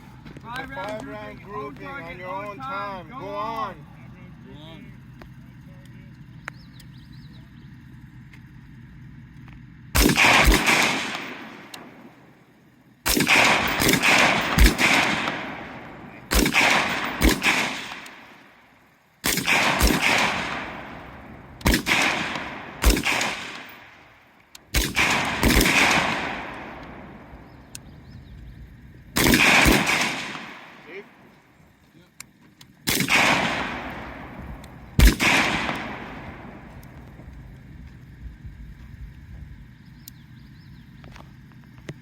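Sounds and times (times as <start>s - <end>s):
rifle shots echoing: 9.9s - 31.8s, 32.7s - 37.8s.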